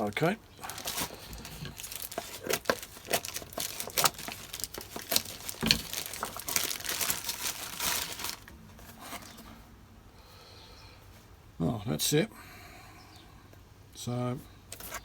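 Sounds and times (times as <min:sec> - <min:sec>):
packaging crinkling: 0:00.0 - 0:09.4.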